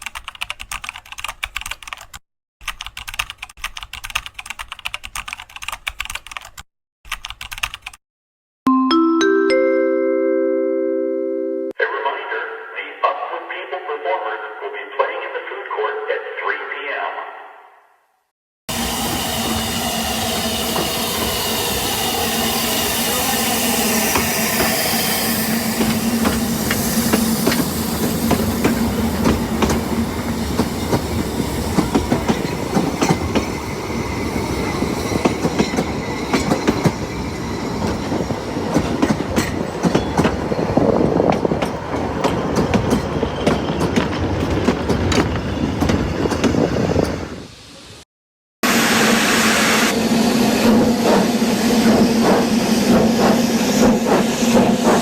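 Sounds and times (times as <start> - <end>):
train wheels clickety-clack: 24.0 - 47.2, 50.6 - 55.0.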